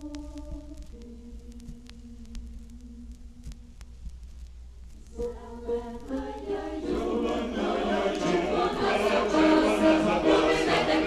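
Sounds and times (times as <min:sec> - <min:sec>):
choir singing: 0:05.1 - 0:11.0.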